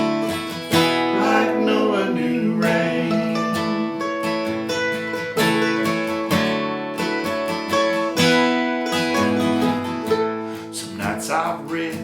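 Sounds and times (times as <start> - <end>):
acoustic guitar strumming: 0.0 - 12.0
person singing: 1.0 - 4.2, 10.7 - 12.0.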